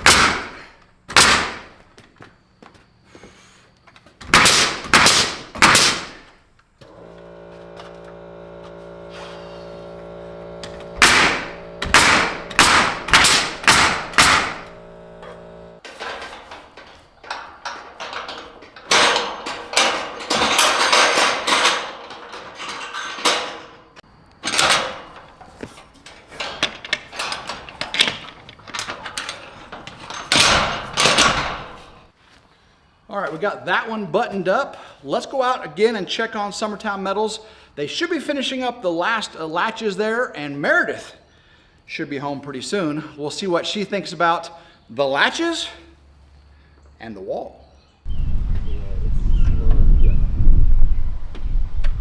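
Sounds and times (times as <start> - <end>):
hammer striking nails into wood: 0.0 - 1.7, 4.2 - 6.3, 11.0 - 14.8
motor hum: 6.8 - 15.9.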